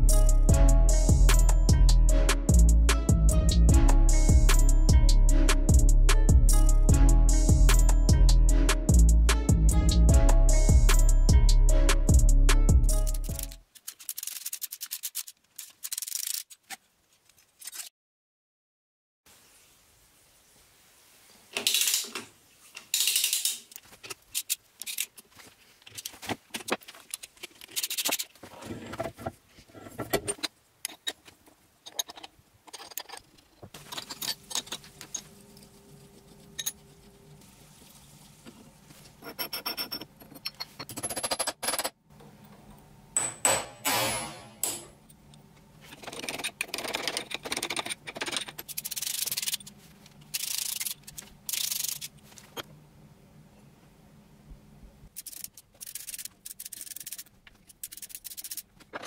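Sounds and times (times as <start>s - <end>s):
scraping and rubbing metal: 31.9s - 41.5s.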